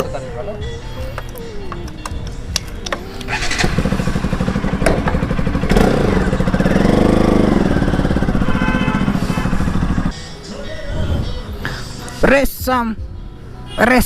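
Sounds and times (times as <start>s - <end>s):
motorcycle engine revving: 3.3s - 10.1s.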